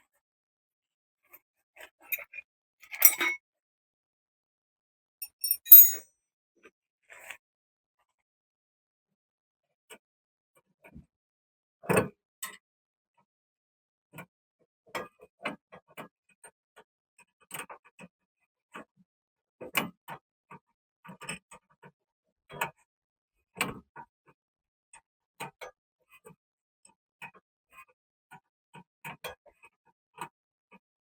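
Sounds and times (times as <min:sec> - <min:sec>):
wrench clicking on metal: 0:03.0 - 0:03.4, 0:05.2 - 0:06.0.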